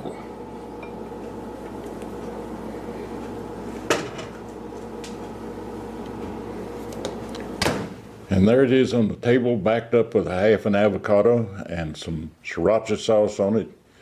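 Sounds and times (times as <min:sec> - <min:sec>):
steady low hum: 0:00.0 - 0:10.6.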